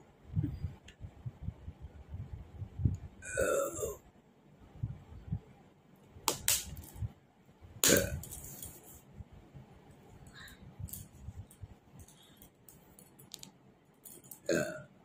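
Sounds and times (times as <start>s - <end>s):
person belching: 3.2s - 4.0s, 7.8s - 8.2s, 14.5s - 14.9s.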